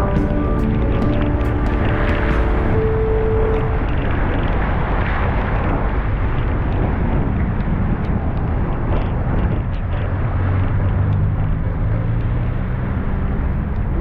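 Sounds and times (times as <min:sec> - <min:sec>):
heavy rain: 0:00.0 - 0:10.7
tyres on a wet street: 0:00.0 - 0:14.0.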